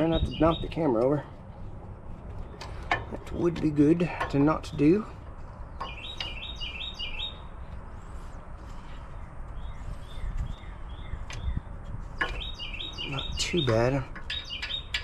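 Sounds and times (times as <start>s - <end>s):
small songbird chirping: 0.0s - 1.4s, 5.4s - 7.8s, 8.8s - 15.0s
low steady rumble: 0.0s - 6.6s.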